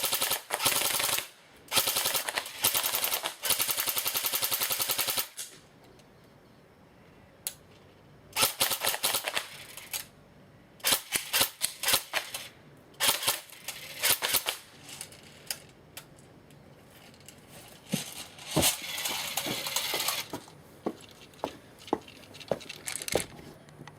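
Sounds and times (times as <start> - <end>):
airsoft gun rapid clicking shots: 0.0 - 5.5, 8.4 - 9.8.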